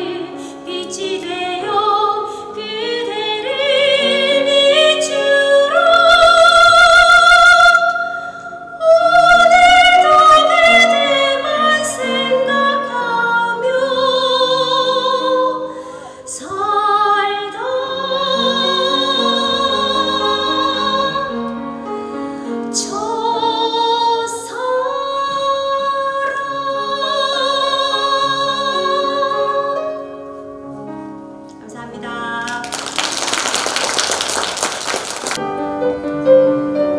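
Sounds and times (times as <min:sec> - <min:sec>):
instrumental accompaniment: 0:28.1 - 0:36.9.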